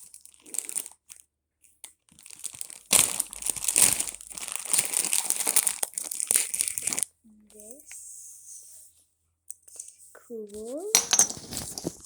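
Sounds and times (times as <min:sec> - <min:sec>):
bag crinkling and tearing: 0:00.0 - 0:01.2, 0:02.1 - 0:07.1.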